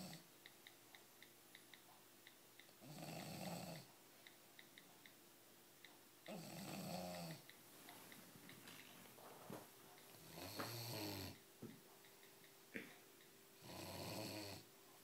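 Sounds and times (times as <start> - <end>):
dog snoring: 0.0 - 0.2, 2.8 - 3.9, 6.3 - 7.4, 10.2 - 11.4, 13.6 - 14.6.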